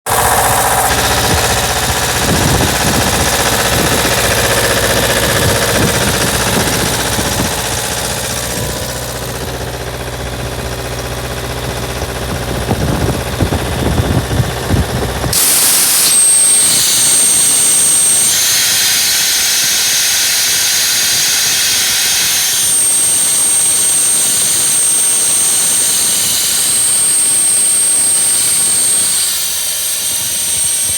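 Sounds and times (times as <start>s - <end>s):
air compressor engine drone: 0.0s - 30.9s
compressed air hissing: 15.3s - 30.9s
thin high whistle: 15.3s - 30.9s.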